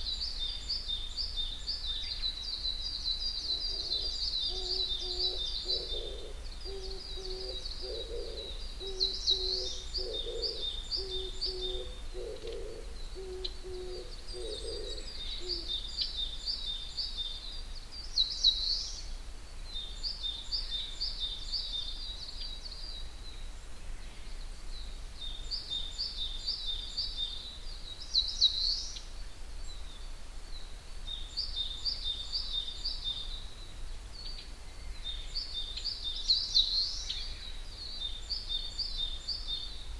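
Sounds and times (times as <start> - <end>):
low hooting bird call: 3.4 - 15.9.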